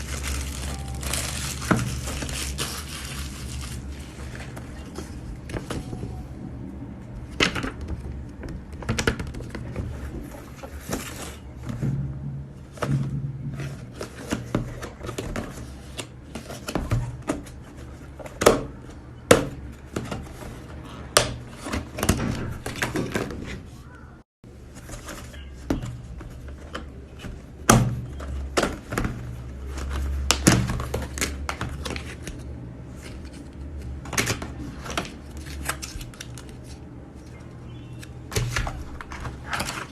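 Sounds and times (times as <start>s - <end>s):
plastic crinkling: 0.0s - 4.9s.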